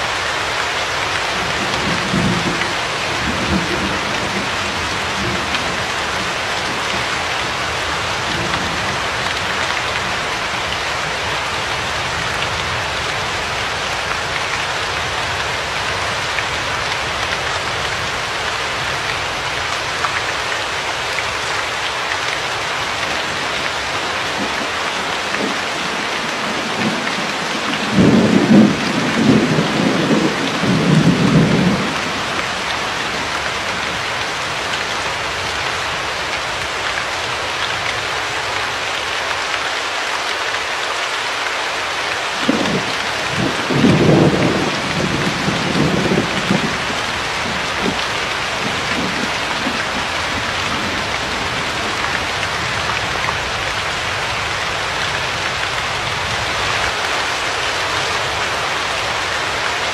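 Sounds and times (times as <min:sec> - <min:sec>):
rain hissing: 0:00.0 - 0:59.9
thunder rolling: 0:27.7 - 0:32.2, 0:42.4 - 0:52.0.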